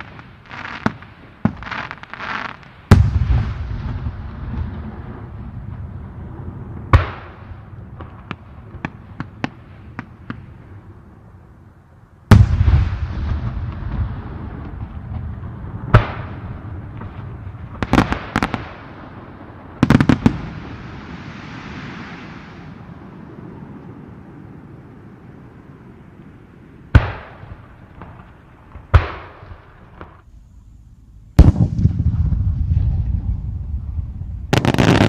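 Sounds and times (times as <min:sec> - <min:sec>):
fireworks bursting: 0:00.0 - 0:05.4, 0:12.3 - 0:24.0, 0:31.4 - 0:35.0
hissing crackle: 0:18.0 - 0:30.8
deep rumbling boom: 0:31.4 - 0:35.0.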